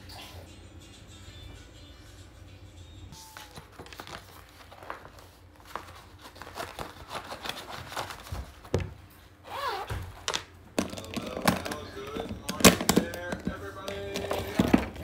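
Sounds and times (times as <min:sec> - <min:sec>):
crinkling and rustling: 0:03.4 - 0:15.0.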